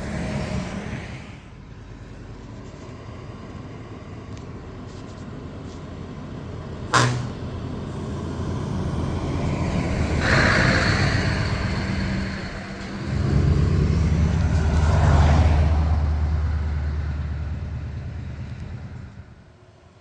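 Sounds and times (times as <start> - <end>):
truck engine driving by: 4.6 - 19.6
deep exhaust rumble: 5.4 - 19.6.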